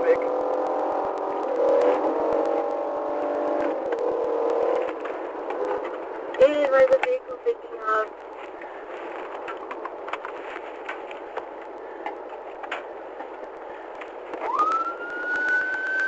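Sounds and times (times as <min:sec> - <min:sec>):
steady noise with crackles: 0:00.0 - 0:16.0
police siren: 0:14.4 - 0:16.0.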